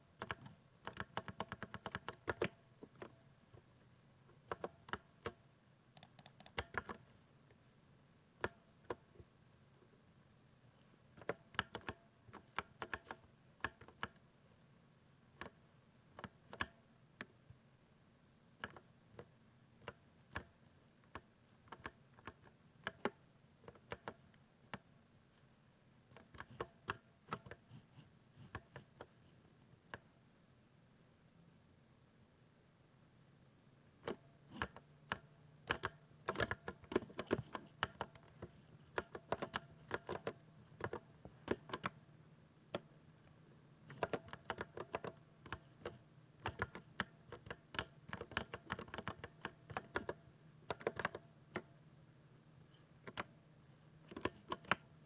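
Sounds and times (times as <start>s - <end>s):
mechanical keyboard typing: 0.2s - 3.1s, 6.0s - 7.0s, 11.2s - 14.2s, 34.0s - 42.0s, 43.9s - 51.7s, 54.1s - 54.8s.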